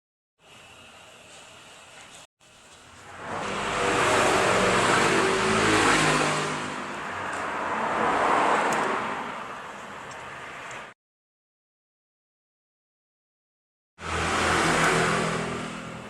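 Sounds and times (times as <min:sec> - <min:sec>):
motorcycle engine revving: 0:03.0 - 0:08.9, 0:14.0 - 0:16.0.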